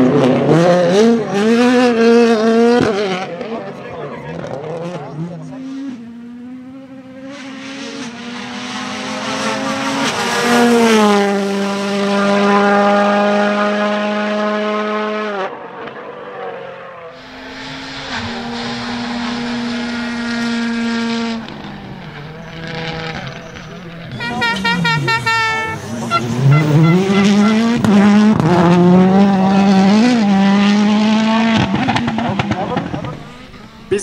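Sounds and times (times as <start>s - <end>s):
rally car engines running hard: 0.0s - 34.0s
car passing by: 7.3s - 33.9s.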